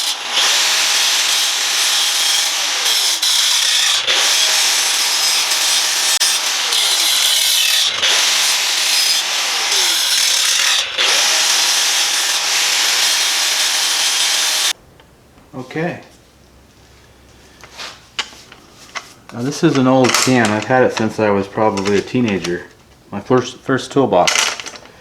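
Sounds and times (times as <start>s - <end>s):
power tool on steel can: 0.0s - 14.8s.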